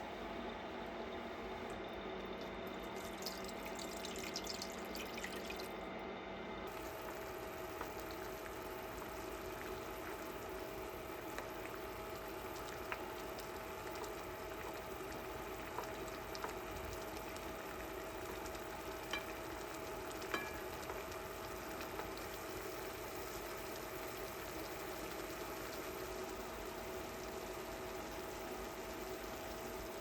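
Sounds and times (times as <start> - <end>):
sausage sizzling in a pan: 6.7 - 30.0
utensil clicking against pan: 20.2 - 20.7.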